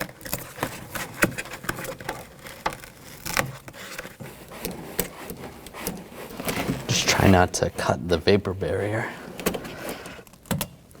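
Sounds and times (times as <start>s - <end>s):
plastic sheet peeling off tape: 0.0s - 7.6s.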